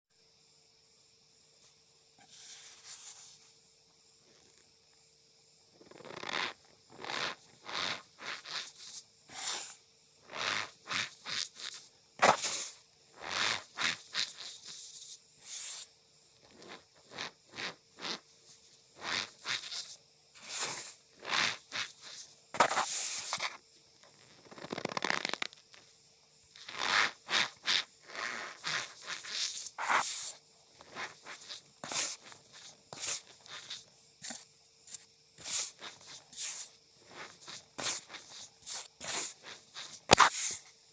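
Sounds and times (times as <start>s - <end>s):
faint steady hum: 0.1s - 40.9s
cornstarch squeaky crunches: 6.0s - 9.7s, 10.3s - 14.7s, 24.2s - 25.7s, 26.6s - 34.4s, 35.0s - 40.6s.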